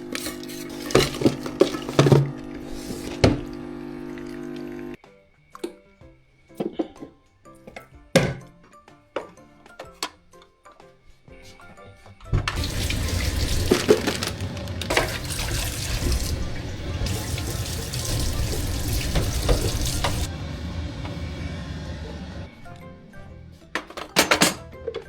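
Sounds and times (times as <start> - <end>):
tap water running into sink: 12.4 - 20.3
water splashes: 12.6 - 20.3.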